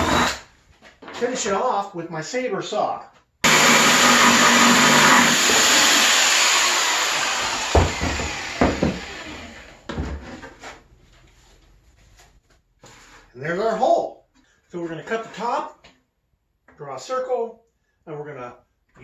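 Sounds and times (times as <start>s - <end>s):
jigsaw motor cutting: 0.0s - 0.4s, 3.4s - 9.8s
sharp knocks: 7.6s - 9.2s.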